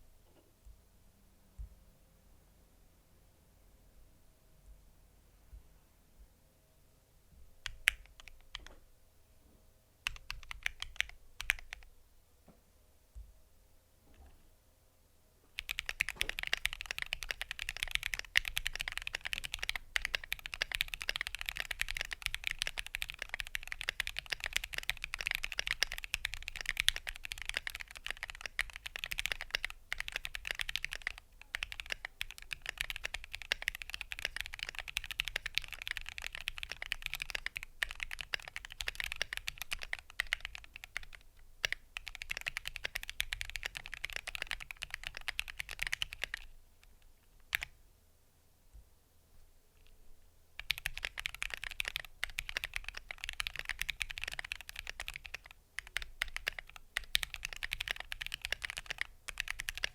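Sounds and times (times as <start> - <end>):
fast mechanical keyboard typing: 7.6 - 8.7, 10.0 - 11.9, 15.6 - 46.5, 47.5 - 47.7, 50.6 - 59.9.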